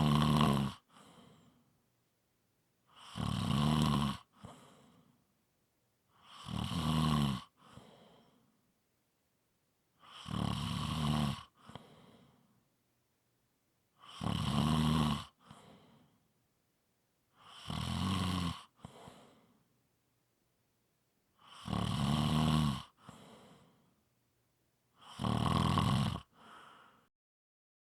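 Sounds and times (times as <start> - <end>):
person snoring: 0.0 - 1.2, 2.9 - 4.9, 6.2 - 8.3, 10.0 - 12.2, 14.0 - 16.0, 17.4 - 19.4, 21.4 - 23.6, 25.0 - 27.0
soft puff of breath: 26.4 - 27.1.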